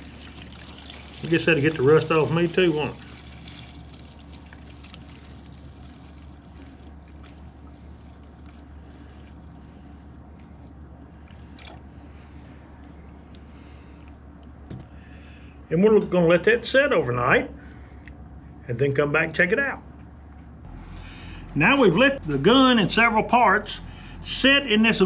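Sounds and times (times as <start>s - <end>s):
liquid pouring and trickling: 0.0s - 8.9s.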